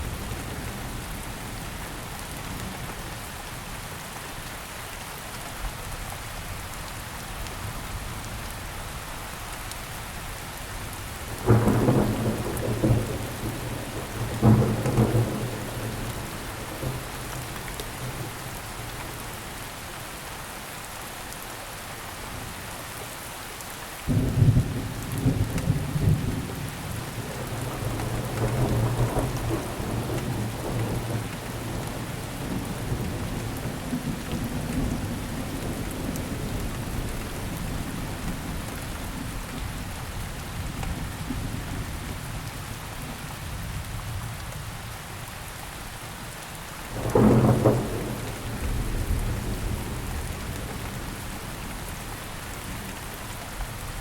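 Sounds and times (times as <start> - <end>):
steady rainfall: 0.0 - 54.0
thunder rumbling: 11.4 - 19.4, 24.1 - 38.6, 46.9 - 52.0.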